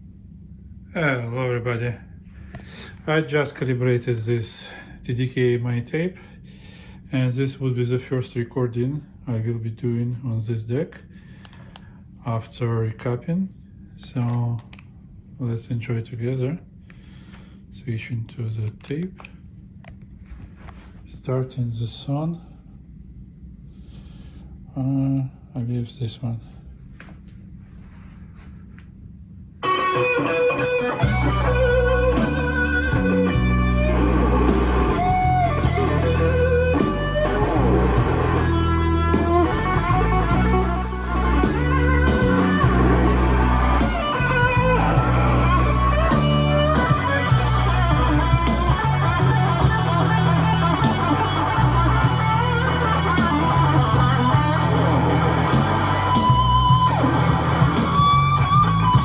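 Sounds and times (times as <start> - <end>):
instrumental rock with electric guitar: 29.6 - 59.0.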